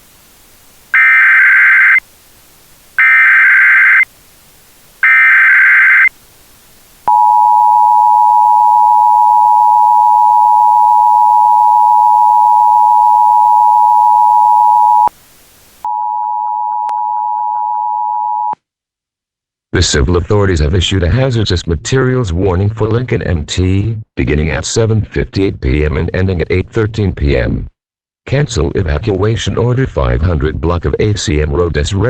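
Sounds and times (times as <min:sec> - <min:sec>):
screeching digital header bursts: 0:01.0 - 0:02.0, 0:03.0 - 0:04.0, 0:05.0 - 0:06.1
two-tone attention signal: 0:01.0 - 0:02.0, 0:03.0 - 0:04.0, 0:05.0 - 0:06.1.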